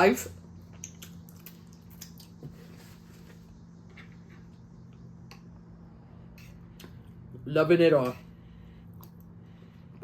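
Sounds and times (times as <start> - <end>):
low steady hum: 0.0 - 10.0
soft chewing: 0.6 - 5.6, 8.2 - 10.0
small clicks and smacks: 0.7 - 2.4.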